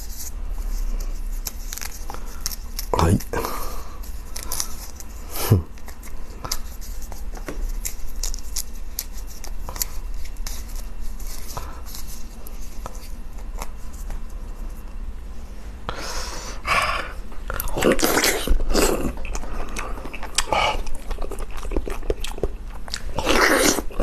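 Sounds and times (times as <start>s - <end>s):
steady low hum: 0.0s - 24.0s
chewing and mouth noises: 17.5s - 24.0s.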